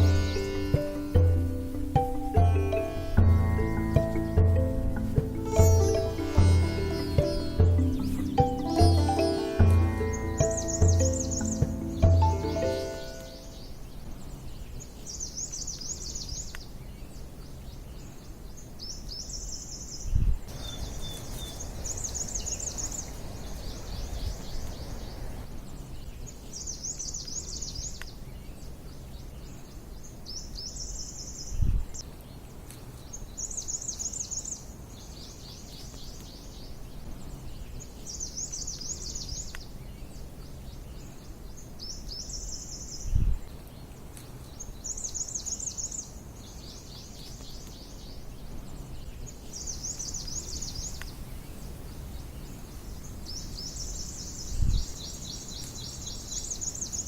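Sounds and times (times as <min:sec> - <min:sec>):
songbird trilling: 0:00.0 - 0:31.6, 0:44.6 - 0:57.0.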